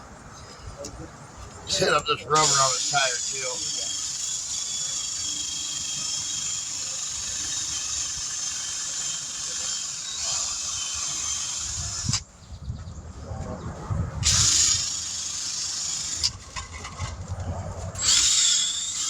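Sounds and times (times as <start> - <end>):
rotary buffing tool whining: 1.8 - 12.2, 14.2 - 17.2, 18.0 - 19.0.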